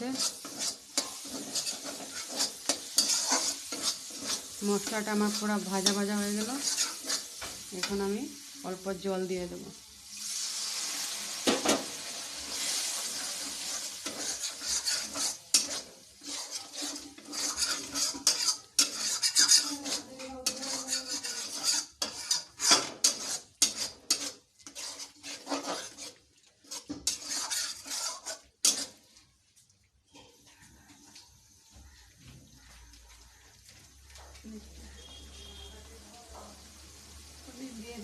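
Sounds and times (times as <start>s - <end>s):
spoon scraping metal pan: 0.0s - 8.2s, 11.4s - 29.2s, 34.9s - 35.7s
paste sizzling: 0.0s - 29.6s, 34.9s - 38.0s.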